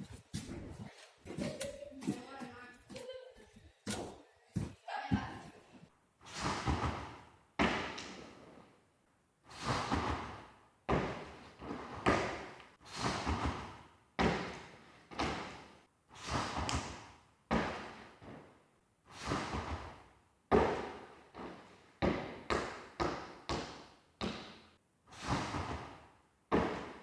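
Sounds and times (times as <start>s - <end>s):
gymnastics landing thuds: 6.3s - 8.7s, 9.5s - 27.0s.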